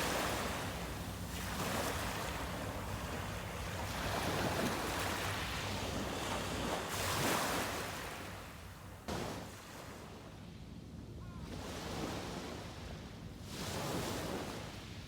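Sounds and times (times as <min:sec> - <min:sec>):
ocean waves breaking on beach: 0:00.0 - 0:08.4.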